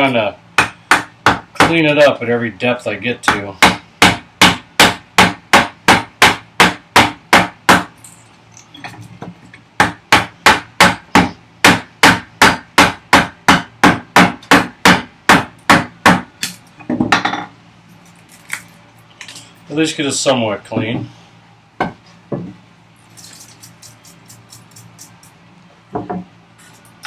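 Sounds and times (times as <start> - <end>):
mallet striking chisel into wood: 0.6 - 1.8, 3.3 - 7.9, 9.8 - 16.3.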